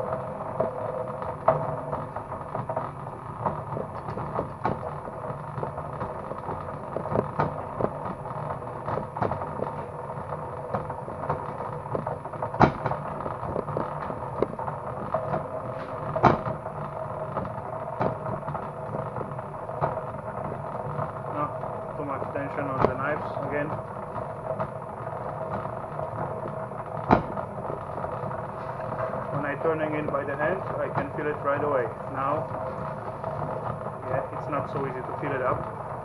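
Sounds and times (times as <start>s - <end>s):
cable stripping machine humming: 0.0s - 36.0s
loud knocks: 3.4s - 5.0s, 10.7s - 14.6s, 15.2s - 16.6s, 27.0s - 28.0s.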